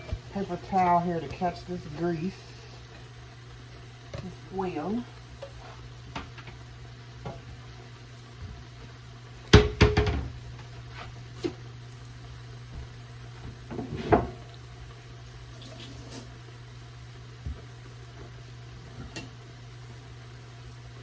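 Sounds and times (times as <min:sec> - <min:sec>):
kitchen items clattering and clinking: 0:09.5 - 0:10.4, 0:13.6 - 0:14.5.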